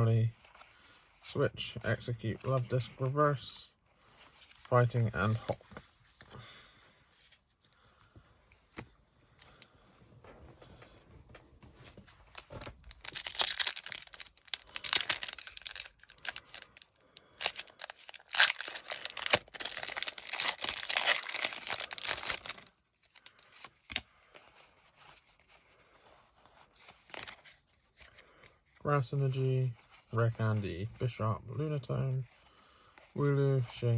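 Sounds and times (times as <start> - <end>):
foil wrapper tearing and rustling: 12.2 - 24.0.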